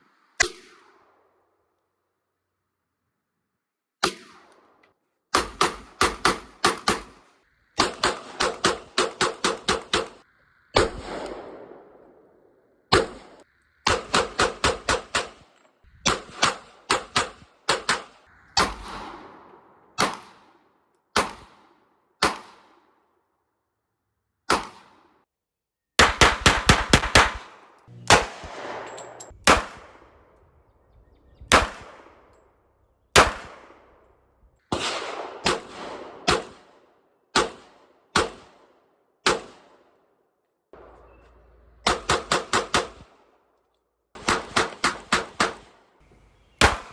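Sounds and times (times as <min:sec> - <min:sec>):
pistol shots: 0:05.3 - 0:07.2, 0:07.8 - 0:10.2, 0:10.8 - 0:12.1, 0:12.9 - 0:15.5, 0:16.1 - 0:23.0, 0:24.5 - 0:25.2, 0:26.0 - 0:30.5, 0:31.5 - 0:32.4, 0:33.2 - 0:34.1, 0:34.7 - 0:39.9, 0:40.8 - 0:43.3, 0:44.2 - 0:45.8, 0:46.6 - 0:46.9.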